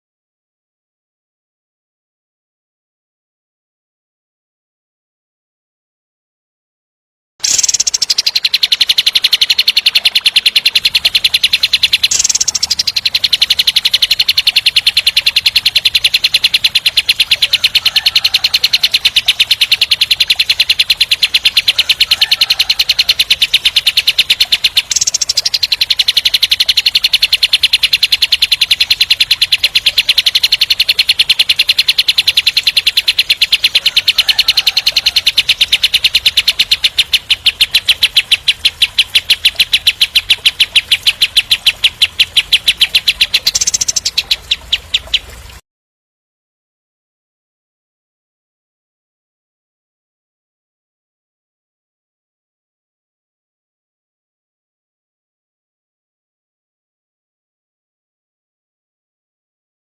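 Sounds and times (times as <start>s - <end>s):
songbird rapid trill: 7.4s - 45.6s.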